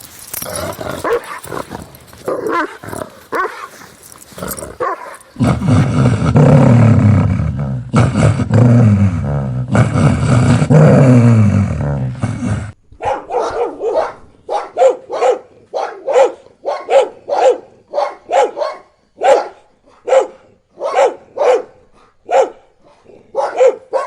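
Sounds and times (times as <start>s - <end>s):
angry dog barking: 0.5s - 5.8s, 13.0s - 24.0s.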